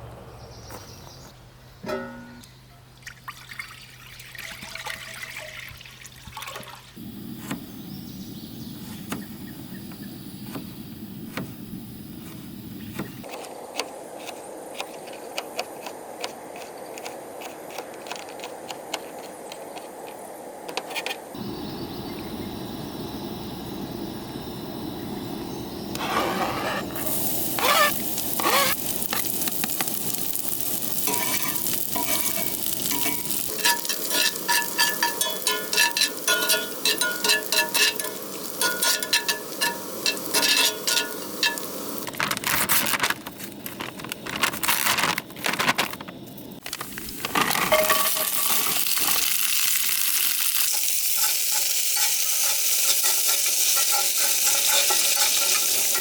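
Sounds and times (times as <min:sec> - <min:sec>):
food sizzling in a pan: 0:27.0 - 0:42.1, 0:47.7 - 0:56.0
utensil clinking against pan: 0:31.0 - 0:41.8, 0:47.7 - 0:48.7, 0:50.7 - 0:56.0.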